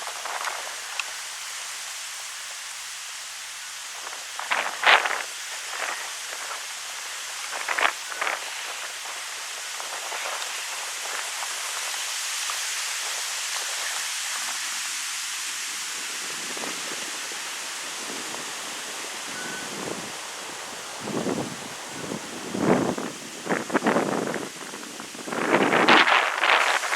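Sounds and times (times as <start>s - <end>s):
wind rustling through trees: 0.0s - 26.9s.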